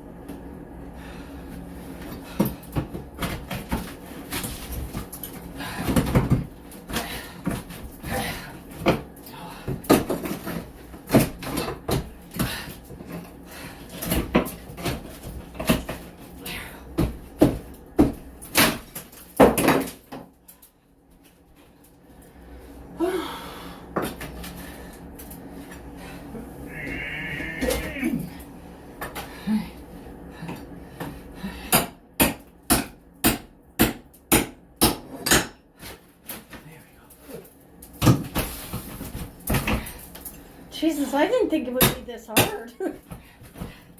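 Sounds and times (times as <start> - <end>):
demolition knocks and bangs on wall: 2.0 - 20.3, 38.0 - 40.1.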